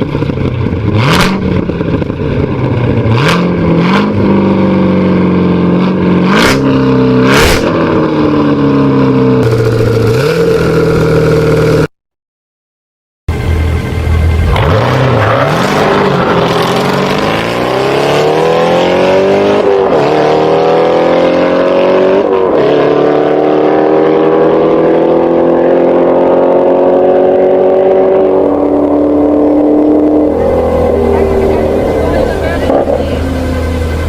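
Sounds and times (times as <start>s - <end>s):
race car engine accelerating: 13.3s - 34.0s.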